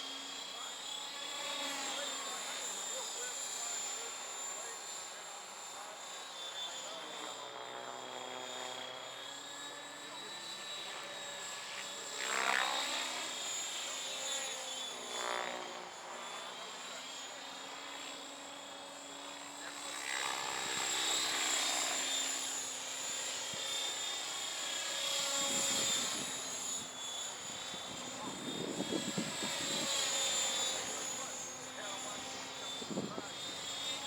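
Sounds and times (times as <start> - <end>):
electric motor whine: 18.6 - 34.0.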